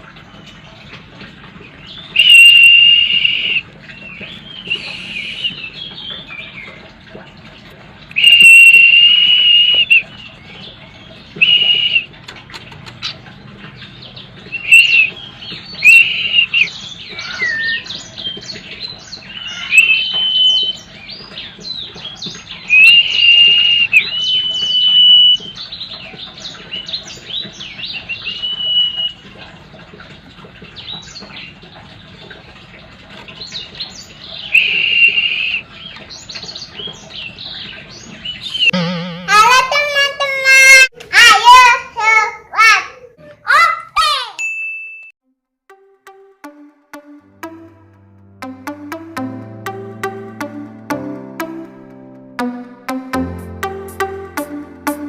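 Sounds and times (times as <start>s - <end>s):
bird whistling: 2.2s - 3.6s, 4.6s - 5.8s, 8.2s - 10.0s, 11.4s - 12.1s, 14.6s - 15.2s, 15.8s - 17.9s, 22.7s - 25.5s, 34.5s - 35.6s.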